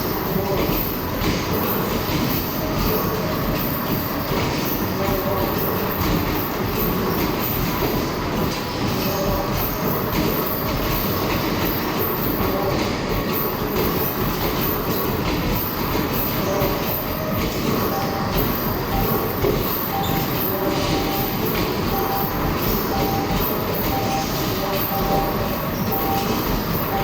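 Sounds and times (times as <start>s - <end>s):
arcade hall din: 16.3s - 27.0s.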